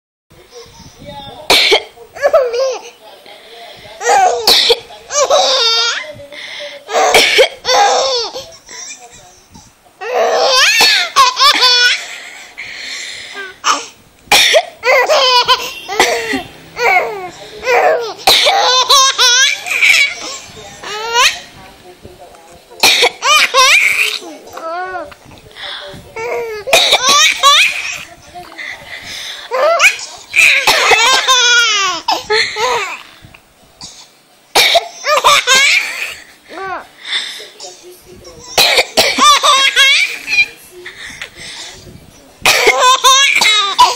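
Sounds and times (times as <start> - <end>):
baby coughing: 1.5 - 2.9, 4.0 - 5.9, 6.9 - 8.4, 10.0 - 11.9, 13.6 - 21.3, 22.8 - 24.3, 26.2 - 28.0, 29.5 - 33.0, 33.8 - 36.2, 38.6 - 40.5, 42.4 - 43.9
baby giggling: 14.8 - 21.4.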